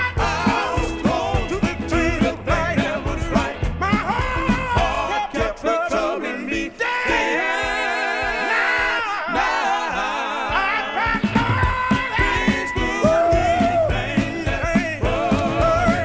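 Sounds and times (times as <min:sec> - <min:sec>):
drums and bass: 0:00.0 - 0:05.7, 0:10.5 - 0:16.0
gospel group singing in harmony: 0:00.0 - 0:16.0.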